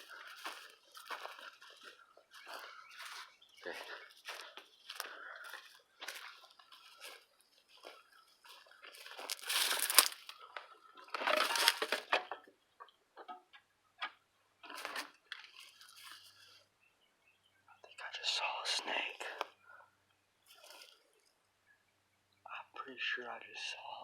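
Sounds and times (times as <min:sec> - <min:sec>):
footsteps crunching on dry debris: 0:00.0 - 0:10.6, 0:11.2 - 0:12.1
sharp crackles: 0:09.0 - 0:10.4.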